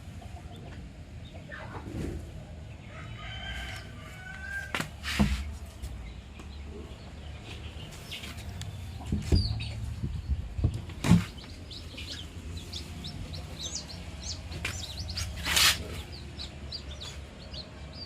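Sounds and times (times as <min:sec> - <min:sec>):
chickens clucking: 0:00.0 - 0:02.4, 0:06.4 - 0:18.0
steady low hum: 0:05.2 - 0:18.0.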